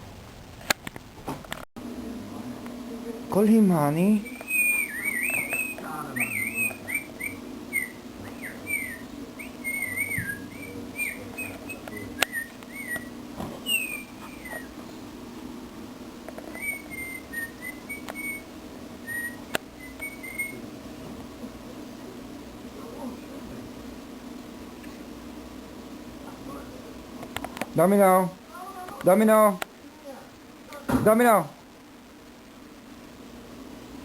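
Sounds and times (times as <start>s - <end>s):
dog whining: 4.3s - 14.8s, 16.5s - 18.4s, 19.0s - 20.6s.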